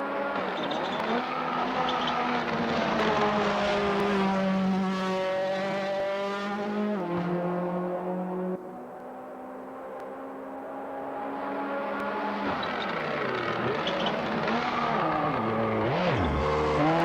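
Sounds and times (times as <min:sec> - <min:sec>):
car engine revving high: 0:11.2 - 0:17.0.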